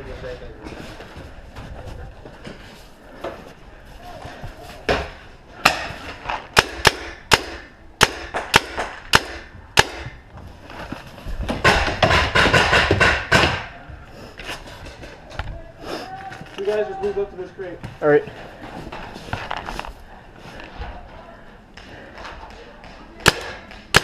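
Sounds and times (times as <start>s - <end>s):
paintball markers firing: 23.2s - 24.0s.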